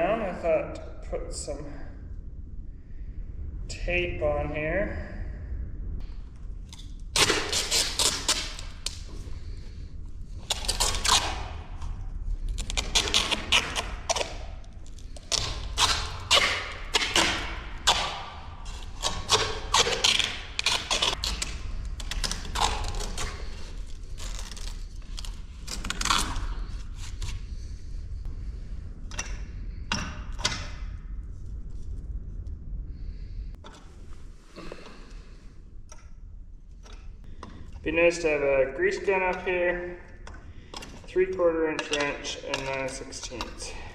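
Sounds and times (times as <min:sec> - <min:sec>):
low wind rumble on microphone: 0:00.0 - 0:43.9
adhesive tape ripping: 0:07.2 - 0:09.1, 0:10.4 - 0:27.2.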